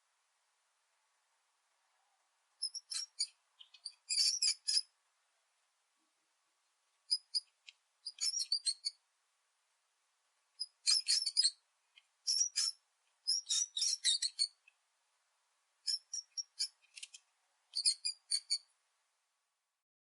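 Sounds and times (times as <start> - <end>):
mouse squeaking: 2.6 - 4.9, 7.1 - 9.0, 10.6 - 11.6, 12.2 - 14.6, 15.8 - 18.7.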